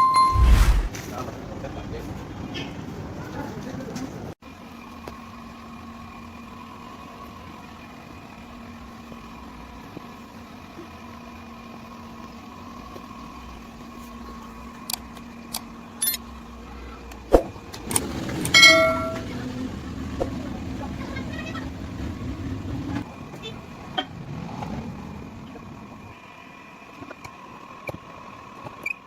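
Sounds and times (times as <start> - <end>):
short ringing squeal: 18.5 - 19.2.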